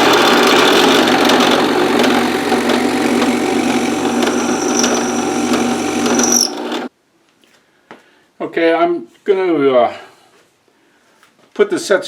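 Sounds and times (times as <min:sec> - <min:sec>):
drill press drilling: 0:00.0 - 0:06.9
faint high squeal: 0:04.2 - 0:05.3, 0:06.0 - 0:06.6.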